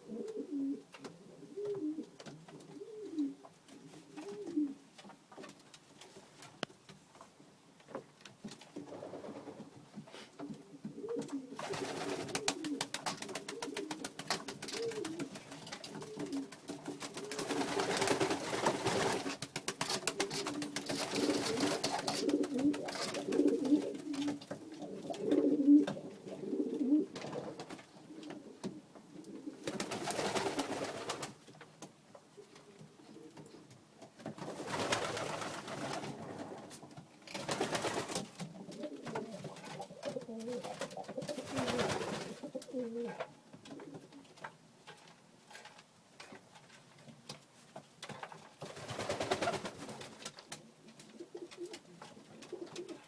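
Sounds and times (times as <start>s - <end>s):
pigeons cooing: 0.0s - 3.4s, 10.4s - 19.2s, 20.0s - 30.0s, 38.4s - 44.1s.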